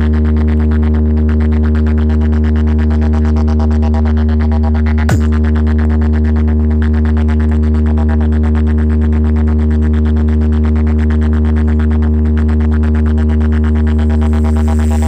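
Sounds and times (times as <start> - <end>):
deep synthesized bass drone: 0.0 - 15.0.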